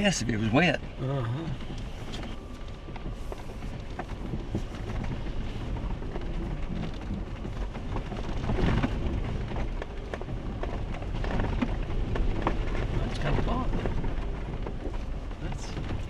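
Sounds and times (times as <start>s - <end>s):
knocks and rattles over bumps: 0.0s - 16.0s
vehicle rumbling on dirt trail: 0.0s - 16.0s.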